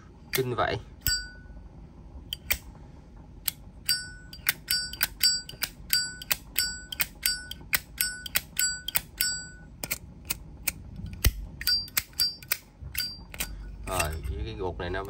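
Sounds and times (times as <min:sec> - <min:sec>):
bright ringing ping: 0:01.0 - 0:01.6, 0:03.9 - 0:09.7
lighter lid clicking open and shut: 0:02.3 - 0:02.7, 0:04.3 - 0:13.6.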